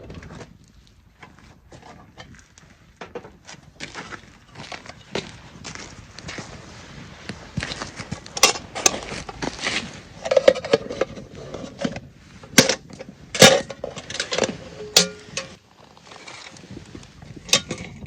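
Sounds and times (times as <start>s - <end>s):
metal cookware clinking: 13.4s - 15.6s.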